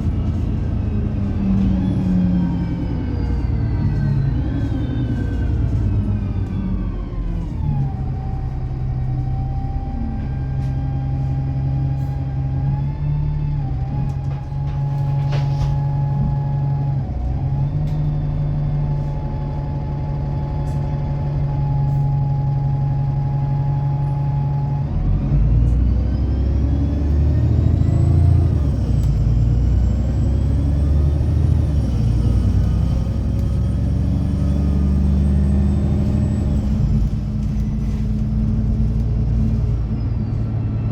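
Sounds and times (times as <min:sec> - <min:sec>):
bus engine rumble: 0:00.0 - 0:40.9.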